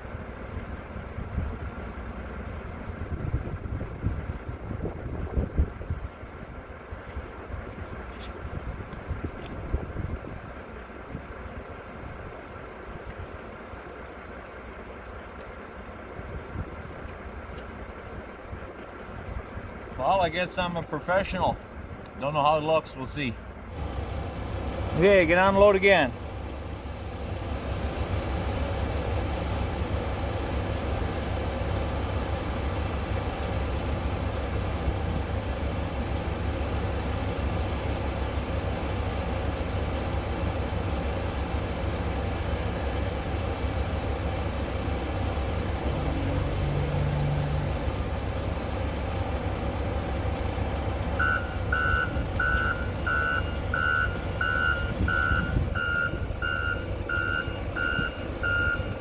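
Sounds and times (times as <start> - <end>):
diesel engine running: 0.0 - 59.0
backup alarm beeping: 51.2 - 59.0.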